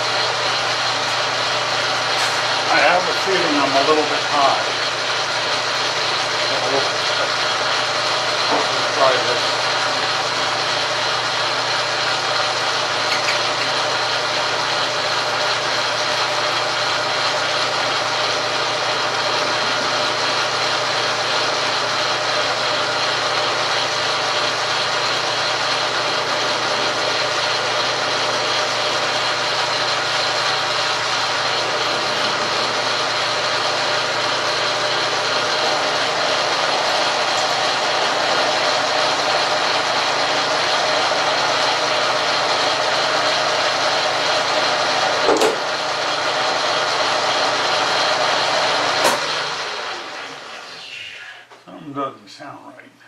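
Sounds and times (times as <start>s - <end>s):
metal lathe cutting with high whine: 0.0s - 51.1s.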